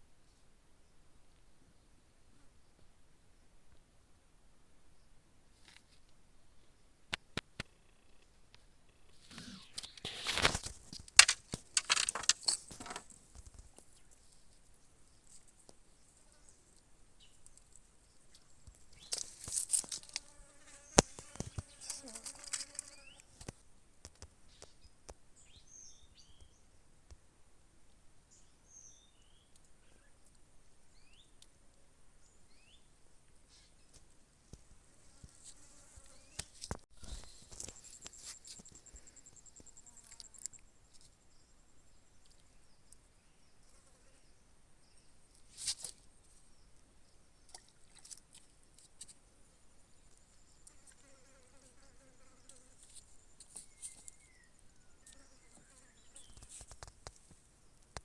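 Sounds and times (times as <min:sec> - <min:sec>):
faint insect chirp: 0:00.2 - 0:58.0
rustling and clicking handling noise: 0:09.1 - 0:15.8, 0:17.4 - 0:20.3, 0:21.0 - 0:24.3, 0:36.4 - 0:41.1, 0:56.2 - 0:58.0.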